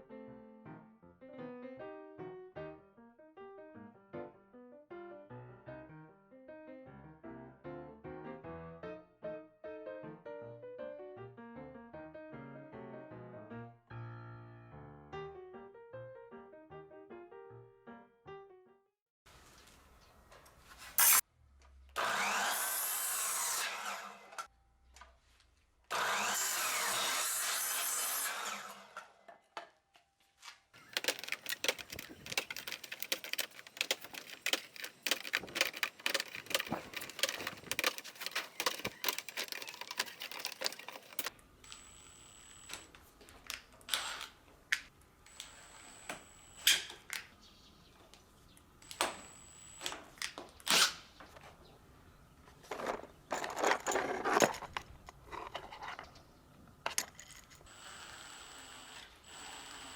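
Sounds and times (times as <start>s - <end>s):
power saw cutting wood: 21.0s - 21.2s, 22.0s - 24.5s, 25.9s - 29.2s, 57.7s - 59.9s
scraping and rubbing on wood: 52.6s - 56.3s.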